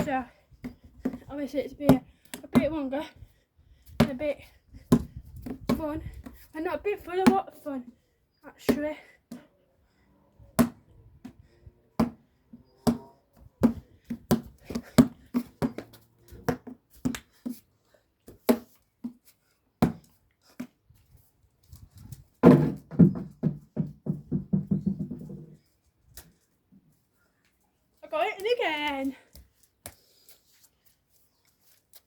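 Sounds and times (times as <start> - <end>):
basketball bouncing on hard ground: 0.0 - 2.8, 4.9 - 6.4, 10.6 - 11.4, 12.0 - 17.3, 19.8 - 20.1, 22.4 - 25.5.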